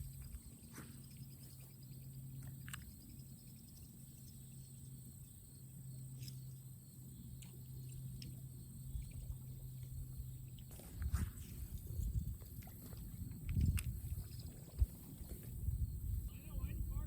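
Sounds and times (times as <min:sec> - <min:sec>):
high insect drone: 0:00.0 - 0:12.5
faint low hum: 0:00.0 - 0:17.0.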